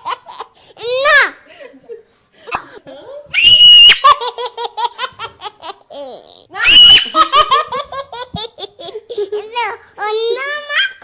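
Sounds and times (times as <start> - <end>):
baby laughing: 0.0 - 0.6, 3.8 - 9.8
baby shrieking: 3.4 - 4.1, 6.6 - 7.3.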